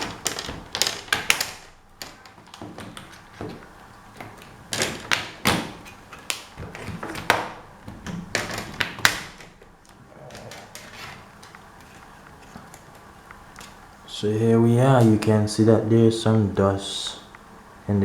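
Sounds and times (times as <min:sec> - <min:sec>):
plastic clips popping loose: 0:00.0 - 0:13.9.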